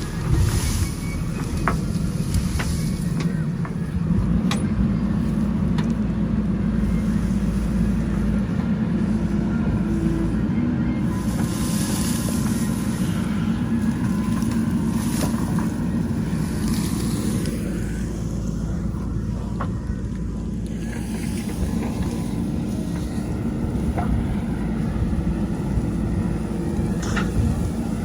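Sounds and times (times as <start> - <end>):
diesel engine running: 0.0 - 28.0.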